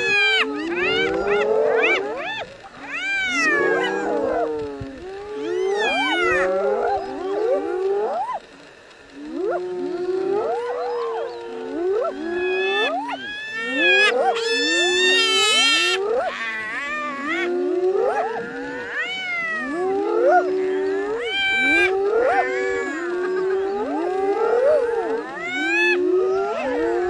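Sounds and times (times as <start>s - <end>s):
hyenas squealing and yelping: 0.0s - 27.0s.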